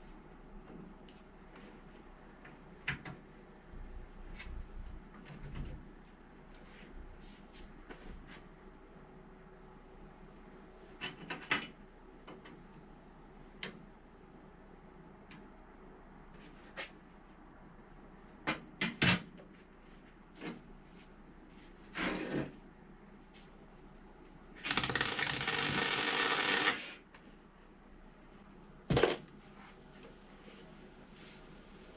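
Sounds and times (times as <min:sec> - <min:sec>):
small electric motor running: 0:24.7 - 0:26.8.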